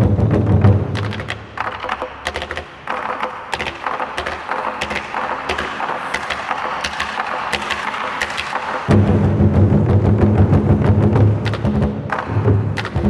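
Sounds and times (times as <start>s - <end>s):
wooden sticks clacking on wood: 1.0s - 8.9s.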